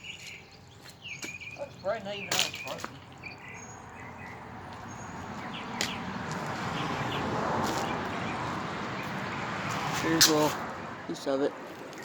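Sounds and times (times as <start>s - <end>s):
bird chirps: 0.0s - 6.2s
passing vehicle rush: 2.6s - 12.0s.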